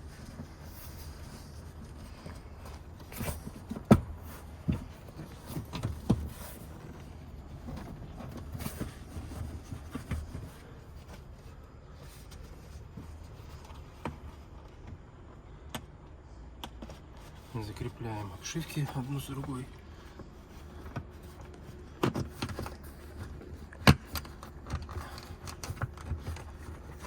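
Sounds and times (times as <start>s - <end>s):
knocks and clicks of seat parts: 2.7s - 6.7s, 20.1s - 27.0s.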